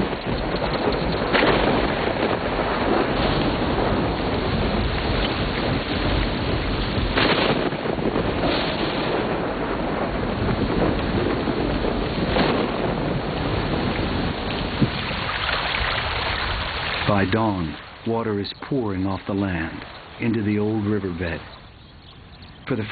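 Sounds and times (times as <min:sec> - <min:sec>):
sharp thunder crack: 0:00.0 - 0:17.6
rolling thunder: 0:00.0 - 0:18.2
heavy rain pouring: 0:00.0 - 0:22.9.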